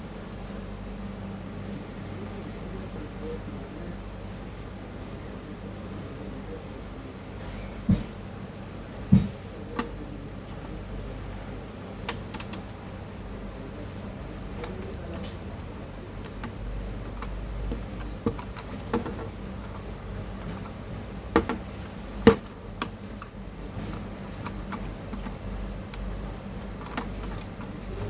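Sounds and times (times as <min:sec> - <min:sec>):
steady low hum: 0:00.0 - 0:28.0
computer hardware clicks and taps: 0:12.0 - 0:12.8, 0:14.5 - 0:28.0.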